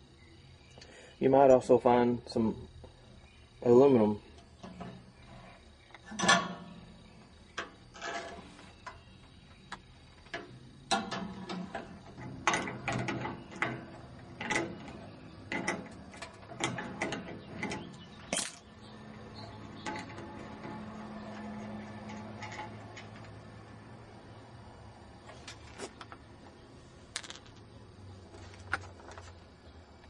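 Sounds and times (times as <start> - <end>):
scrap metal clanking and rattling: 4.5 - 9.4, 10.3 - 18.6, 19.3 - 23.4.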